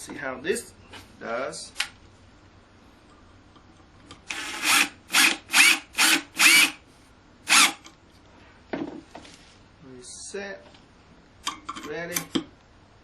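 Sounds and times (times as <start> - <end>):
impact driver whining: 4.2 - 6.8, 7.5 - 7.8.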